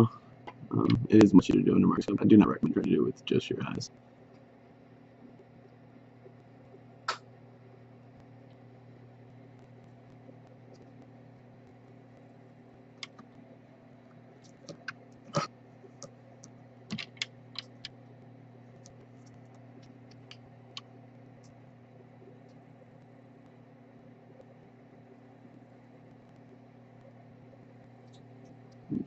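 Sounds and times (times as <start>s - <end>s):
low electrical hum: 0.0s - 29.0s
soldering tools tapping: 14.1s - 21.6s.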